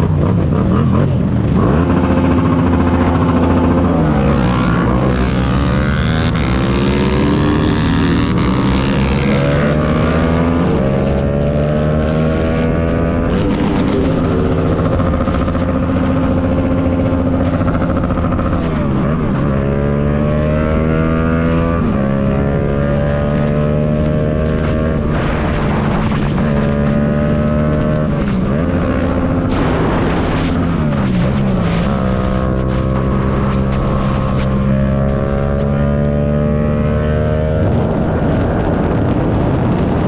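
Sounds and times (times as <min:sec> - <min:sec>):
motorcycle engine running: 0:00.0 - 0:40.0.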